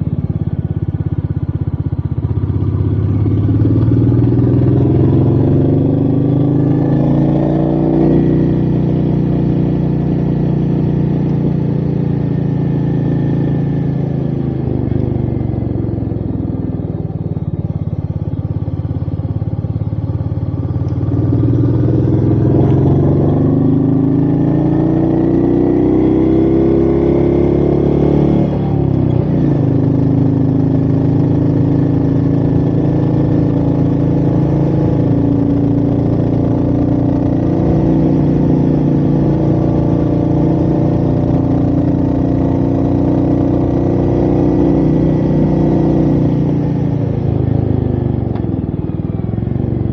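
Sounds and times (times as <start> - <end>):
motorcycle engine accelerating: 0.0 - 49.9.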